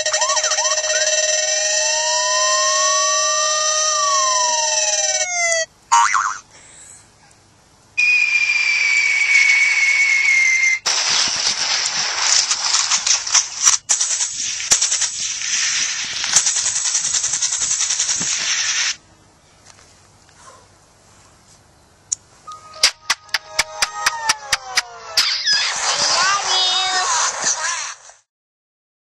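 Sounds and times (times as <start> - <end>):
mouth-made hissing whistle: 0.0 - 5.3, 8.0 - 10.9, 22.4 - 23.8
dense crackling hiss: 0.0 - 23.8, 25.2 - 28.2.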